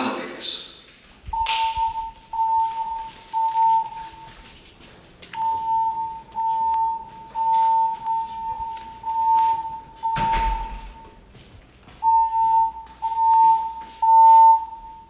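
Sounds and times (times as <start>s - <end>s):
spoken messages over speakers: 0.0s - 4.4s, 5.4s - 11.1s
pulsing alarm tone: 1.3s - 4.5s, 5.4s - 11.2s, 12.0s - 15.0s.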